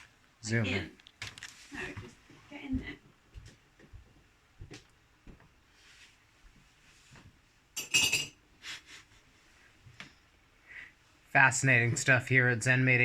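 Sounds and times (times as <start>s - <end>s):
kitchenware clattering: 7.8s - 8.4s.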